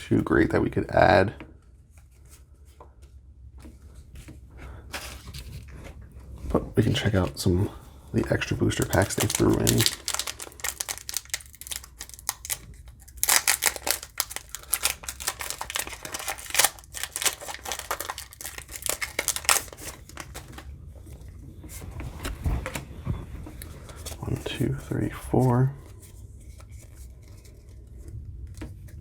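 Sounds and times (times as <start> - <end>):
foil wrapper crinkling and tearing: 8.3 - 20.7.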